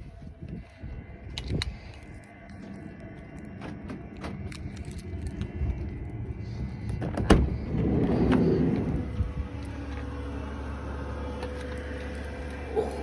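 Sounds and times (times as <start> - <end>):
sliding door rumble: 3.0 - 13.0
van door clunk: 7.0 - 8.8.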